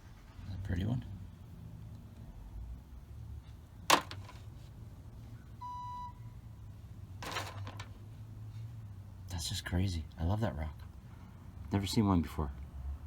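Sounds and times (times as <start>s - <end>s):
short electronic beep: 5.6s - 6.2s.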